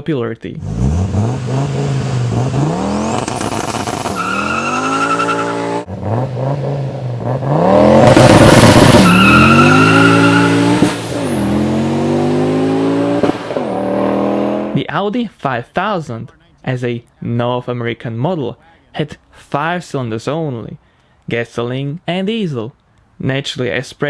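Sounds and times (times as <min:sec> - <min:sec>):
car engine accelerating: 0:00.6 - 0:14.8
high whine rising with revs: 0:00.6 - 0:14.8.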